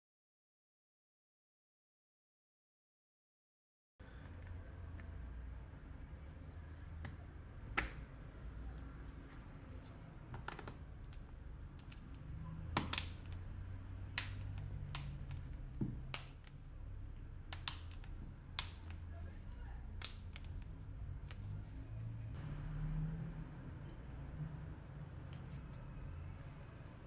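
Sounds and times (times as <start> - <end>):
small parts clicking and tapping: 17.5 - 19.1.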